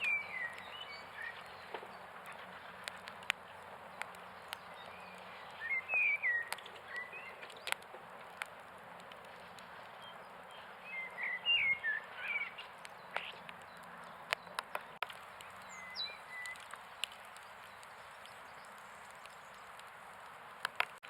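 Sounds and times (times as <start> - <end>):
bird chirping: 0.0 - 8.5, 9.2 - 20.2
faint clicks: 0.0 - 11.4, 12.2 - 21.0
steady background hiss: 0.0 - 14.0.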